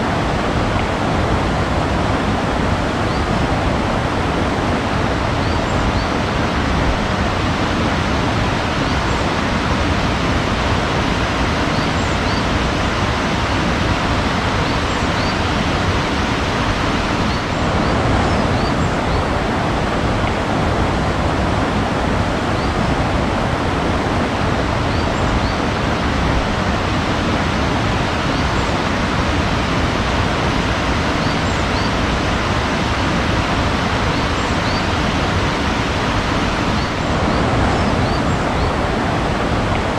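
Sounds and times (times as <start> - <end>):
water rushing: 0.0 - 39.9
faint bird chirps: 34.1 - 34.9.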